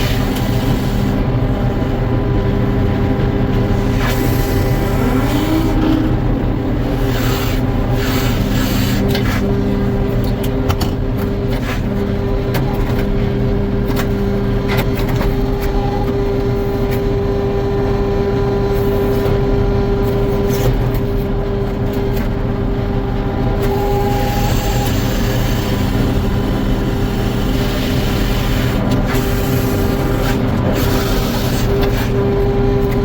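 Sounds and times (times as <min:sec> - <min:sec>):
sawmill humming: 0:00.0 - 0:10.1.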